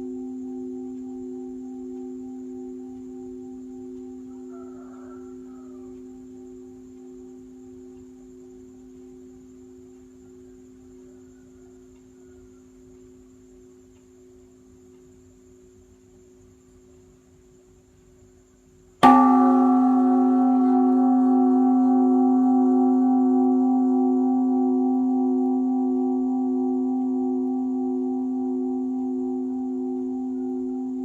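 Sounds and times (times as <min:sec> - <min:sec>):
large temple bell ringing: 0:19.0 - 0:31.0.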